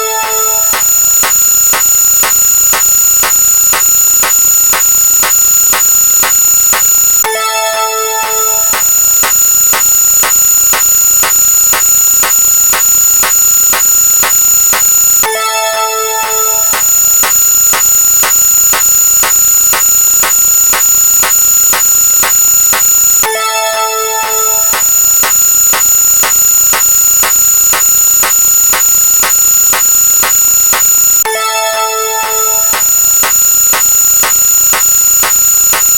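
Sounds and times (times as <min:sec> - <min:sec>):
sharp electronic tick: 0:00.0 - 0:07.3, 0:08.3 - 0:15.4, 0:16.2 - 0:23.4, 0:24.1 - 0:31.4, 0:32.1 - 0:35.9
pulsing click: 0:00.1 - 0:07.3, 0:08.3 - 0:15.4, 0:16.2 - 0:23.4, 0:24.2 - 0:31.3, 0:32.2 - 0:35.9
high-pitched synthetic tones: 0:16.2 - 0:35.9.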